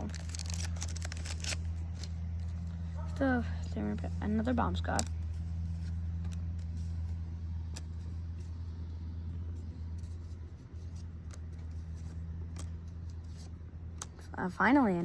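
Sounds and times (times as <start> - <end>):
cards clicking and rustling: 0.0 - 2.8, 4.7 - 8.7, 9.6 - 14.3
low hum: 0.0 - 15.0.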